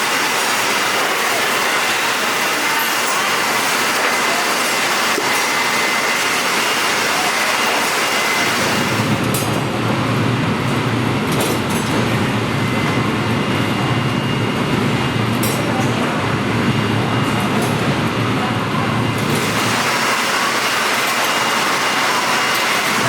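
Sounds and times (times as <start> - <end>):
loud machinery noise: 0.0 - 23.0.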